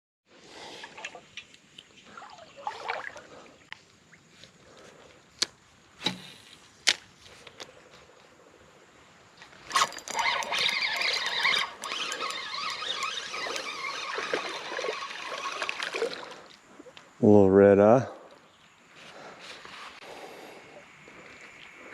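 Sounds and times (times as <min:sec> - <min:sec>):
fishing reel squealing whir: 0:09.7 - 0:16.4.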